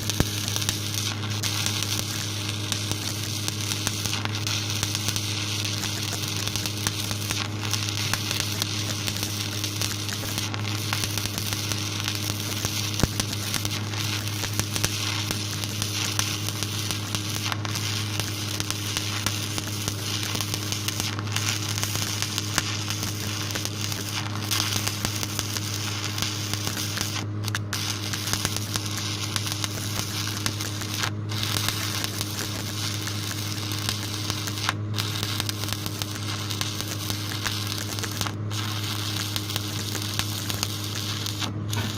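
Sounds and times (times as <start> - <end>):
low constant hum: 0.0 - 41.9
welding arc crackling sizzle: 0.0 - 41.9.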